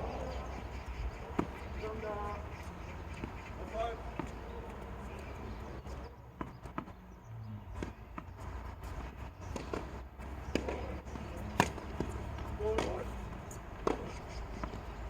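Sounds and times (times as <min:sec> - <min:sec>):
players' footsteps: 0:00.0 - 0:07.0, 0:07.7 - 0:15.0
tennis ball knocks: 0:01.3 - 0:02.0, 0:03.2 - 0:04.6, 0:07.7 - 0:15.0.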